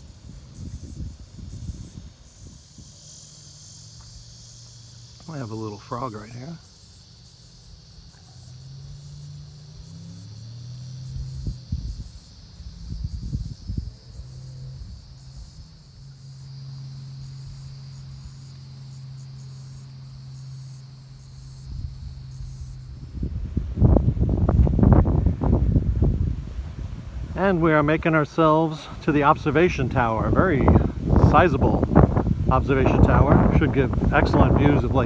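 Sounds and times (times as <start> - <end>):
insects chirring: 0.0 - 35.0
low thumps: 22.8 - 35.0.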